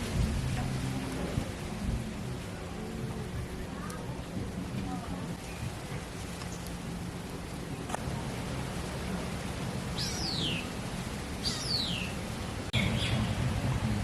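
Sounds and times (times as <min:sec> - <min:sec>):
rain hissing: 0:00.0 - 0:14.0
falling whistled bird calls: 0:10.0 - 0:10.7, 0:11.4 - 0:12.2.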